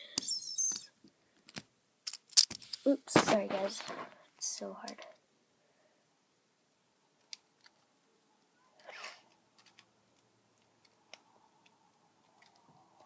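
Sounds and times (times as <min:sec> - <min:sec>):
plastic bricks clicking: 0:01.4 - 0:02.9, 0:08.8 - 0:13.0
soft breathy noise: 0:02.6 - 0:06.3.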